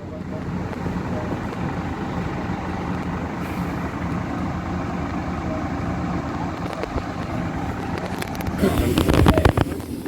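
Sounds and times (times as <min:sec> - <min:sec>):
diesel engine rumbling: 0:00.0 - 0:10.0.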